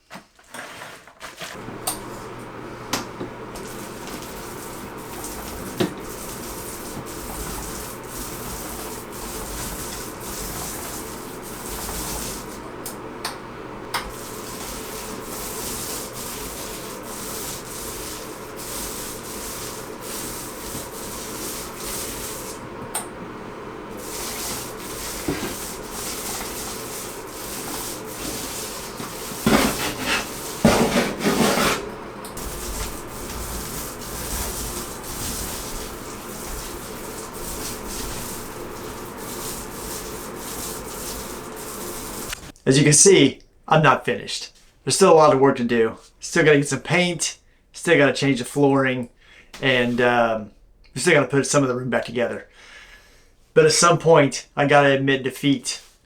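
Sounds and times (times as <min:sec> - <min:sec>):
paint roller rubbing on wall: 0:00.0 - 0:42.6.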